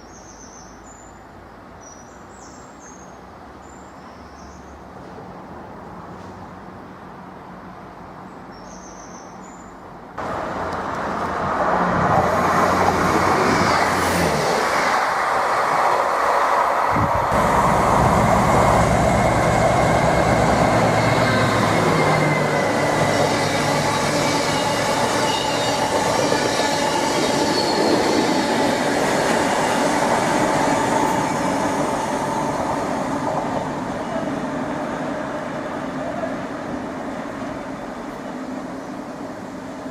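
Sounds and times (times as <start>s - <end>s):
bird chirp: 0.0s - 1.2s, 8.3s - 9.8s
train wheels rumbling: 10.2s - 39.9s
train wheels squealing: 19.7s - 32.7s.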